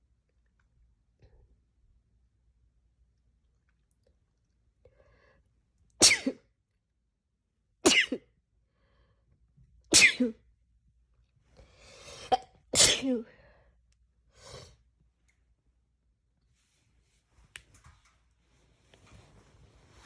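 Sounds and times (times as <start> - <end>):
person sneezing: 6.0 - 6.4, 7.9 - 8.3, 9.9 - 10.4, 12.1 - 13.3.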